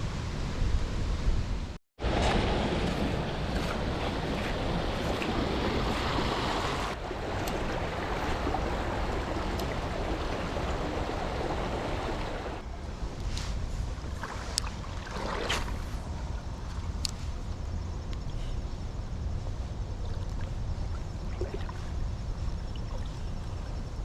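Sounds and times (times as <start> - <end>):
wind buffeting microphone: 0.0 - 17.9
flowing creek water: 2.0 - 12.7, 14.0 - 17.0, 20.0 - 24.0.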